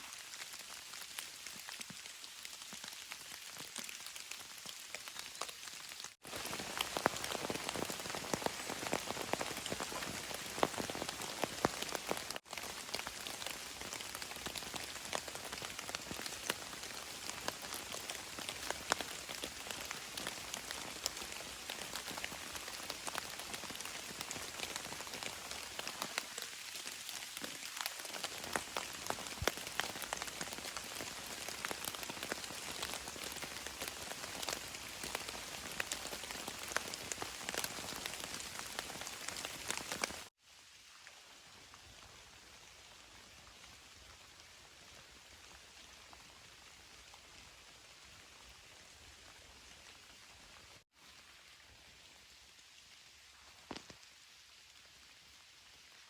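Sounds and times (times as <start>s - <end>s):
raindrops striking a surface: 0.0s - 40.3s, 53.4s - 55.1s
steady rain: 0.0s - 56.0s.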